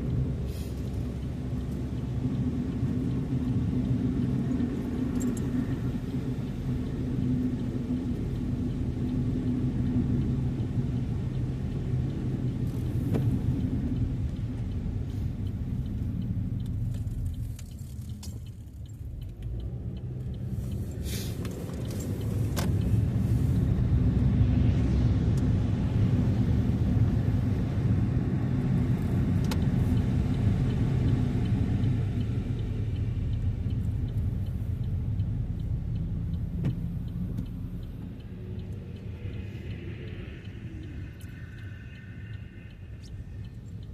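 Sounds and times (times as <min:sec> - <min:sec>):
road and engine rumble: 0:00.0 - 0:43.9
faint clicks: 0:29.4 - 0:43.9.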